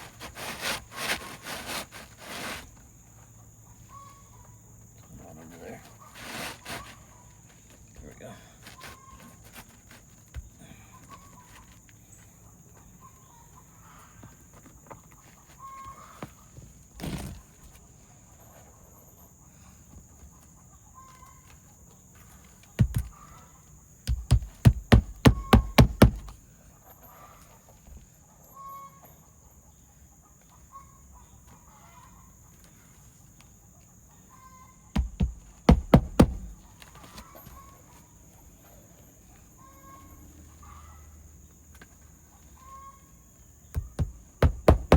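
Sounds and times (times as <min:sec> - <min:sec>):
hammer striking nails: 0:22.8 - 0:23.1, 0:24.1 - 0:26.4, 0:35.0 - 0:36.6, 0:43.8 - 0:44.9.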